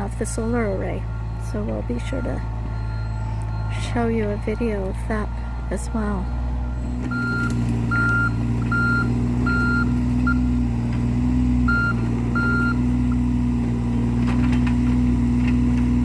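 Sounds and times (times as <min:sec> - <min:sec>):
excavator diesel engine running: 0:00.0 - 0:16.0
travel alarm short beeps: 0:01.2 - 0:10.5, 0:11.7 - 0:12.8.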